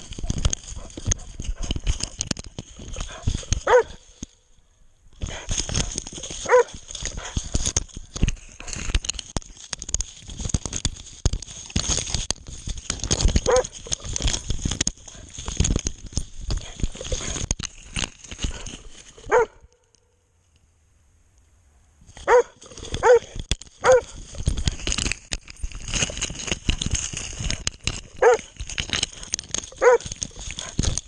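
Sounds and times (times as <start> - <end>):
crackling and rustling: 0.0 - 20.7, 22.0 - 31.0
dog barking: 3.6 - 4.0, 6.4 - 6.8, 19.3 - 19.6, 22.3 - 23.2, 23.8 - 24.0, 29.8 - 30.1.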